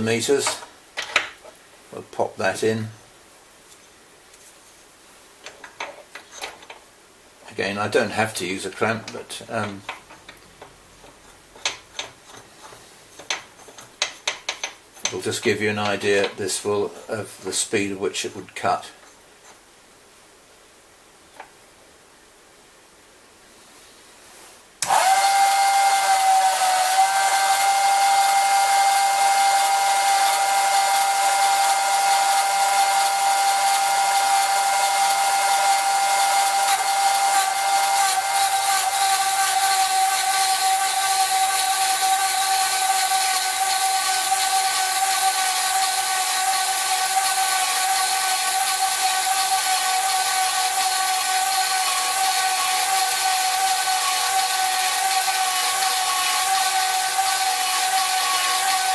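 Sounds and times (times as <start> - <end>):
bandsaw cutting steel: 24.8 - 58.9.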